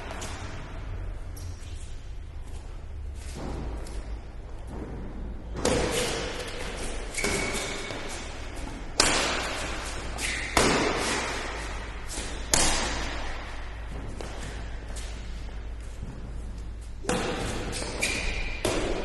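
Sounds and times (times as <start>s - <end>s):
racket hitting shuttlecock: 5.5s - 16.2s, 17.0s - 19.0s
high shoe squeaks: 5.9s - 8.4s, 10.0s - 11.2s, 17.6s - 18.7s.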